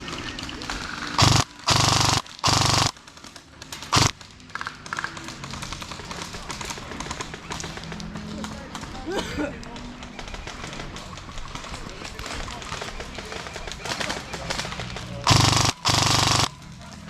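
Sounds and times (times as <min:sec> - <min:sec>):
airsoft rifle firing bursts: 0:00.8 - 0:04.2, 0:10.1 - 0:16.6.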